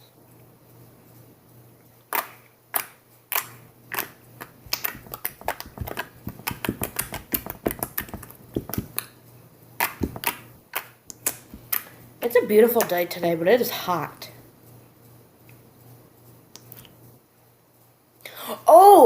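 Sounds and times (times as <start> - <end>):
slime popping and clicking: 2.1 - 9.0, 9.8 - 11.9.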